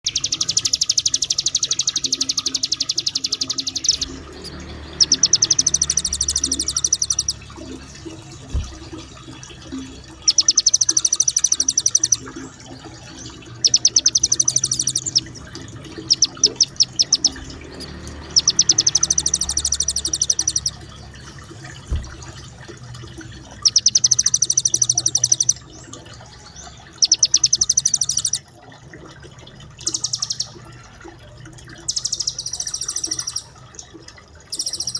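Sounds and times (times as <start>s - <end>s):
songbird high-pitched rolling trill: 0.0s - 7.5s, 10.2s - 12.4s, 13.1s - 21.0s, 23.6s - 25.6s, 26.9s - 28.4s, 29.8s - 30.6s, 31.8s - 33.6s, 34.5s - 34.9s
soft thumps: 8.5s - 9.0s, 21.8s - 22.4s.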